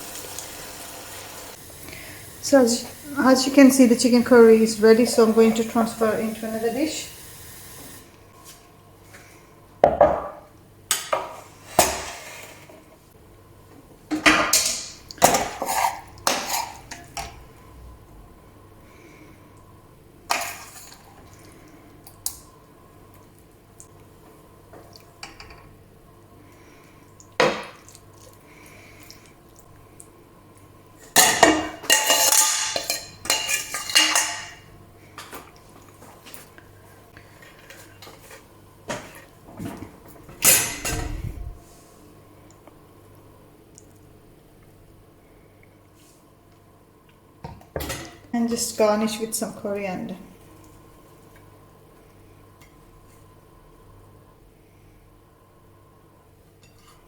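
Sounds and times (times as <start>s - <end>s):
metal spoon scraping a pot: 15.3s - 17.0s.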